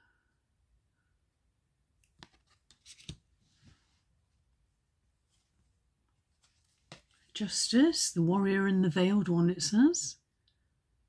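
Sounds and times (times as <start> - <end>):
cards rustling and clicking: 2.0 - 3.3.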